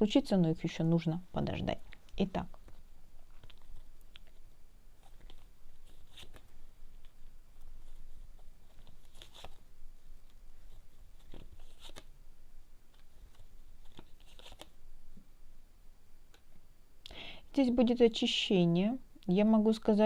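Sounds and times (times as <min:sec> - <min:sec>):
cards rustling and snapping: 0:02.5 - 0:04.4, 0:05.0 - 0:12.1, 0:12.9 - 0:14.8.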